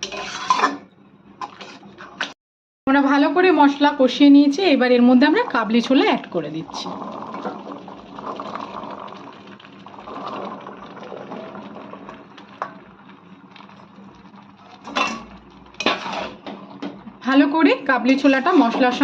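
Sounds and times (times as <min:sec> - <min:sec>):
chickpeas sizzling in pan: 0:06.3 - 0:16.9.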